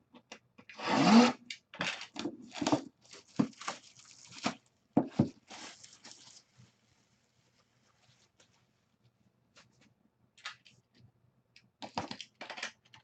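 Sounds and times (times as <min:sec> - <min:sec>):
plastic wrapping crinkling: 0:02.5 - 0:09.6
plastic wrapping ripping: 0:02.6 - 0:04.6, 0:05.4 - 0:06.5.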